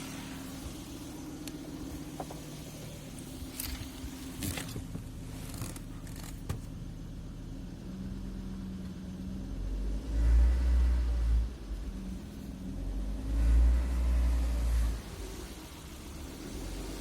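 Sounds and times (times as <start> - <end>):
loud low engine rumble: 0.0 - 17.0
car engine revving: 7.0 - 17.0.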